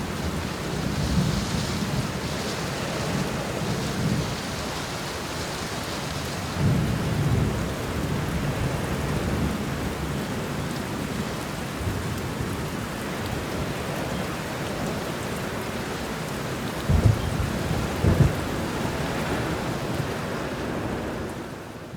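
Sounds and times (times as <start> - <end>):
heavy rain hissing: 0.0 - 21.9
thunder rumbling: 16.8 - 21.3
sharp thunder clap: 16.9 - 18.5.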